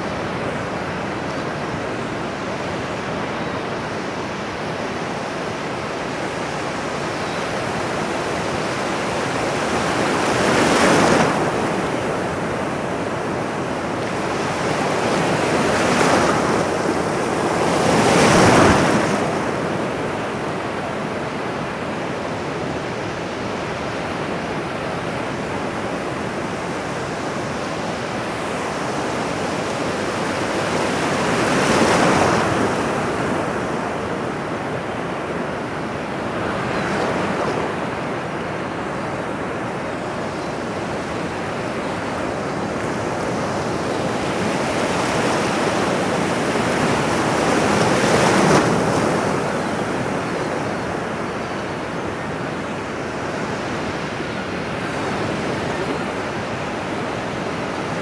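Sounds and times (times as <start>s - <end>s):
ocean waves breaking: 26.4s - 58.0s.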